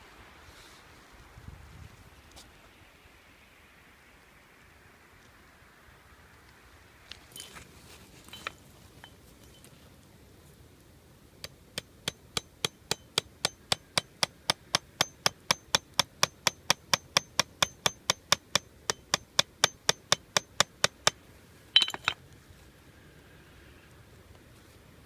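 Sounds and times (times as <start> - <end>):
steady hammering: 11.4 - 21.2.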